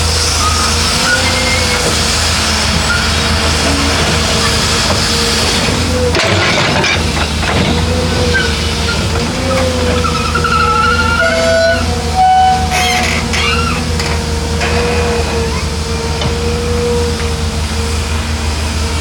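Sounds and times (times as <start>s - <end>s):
excavator diesel engine under load: 0.0s - 19.0s
high squeals: 8.3s - 17.1s.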